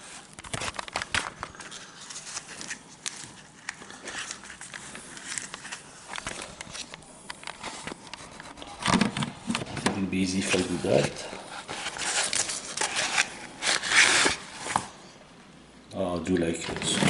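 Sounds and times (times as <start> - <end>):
packaging rustling: 0.0 - 15.0.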